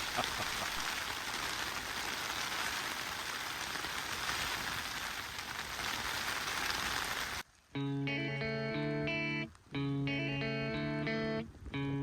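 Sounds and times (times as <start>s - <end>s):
heavy rain falling: 0.0s - 7.4s
guitar music: 7.8s - 12.0s.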